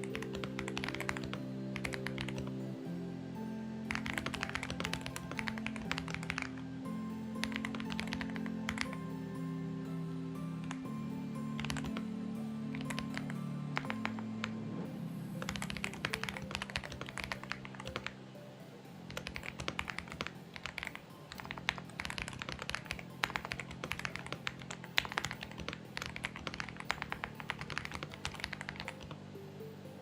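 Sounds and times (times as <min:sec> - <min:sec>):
mechanical keyboard typing: 0:00.0 - 0:02.6, 0:03.9 - 0:06.6, 0:07.4 - 0:09.1, 0:10.6 - 0:10.8, 0:11.6 - 0:12.0, 0:12.7 - 0:14.5, 0:15.4 - 0:18.2, 0:19.1 - 0:29.2.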